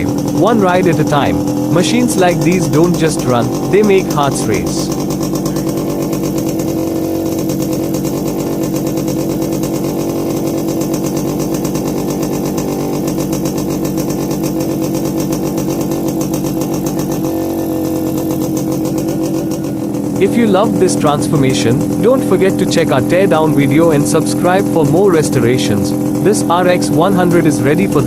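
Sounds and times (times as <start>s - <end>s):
two-stroke engine running: 0.0s - 28.0s.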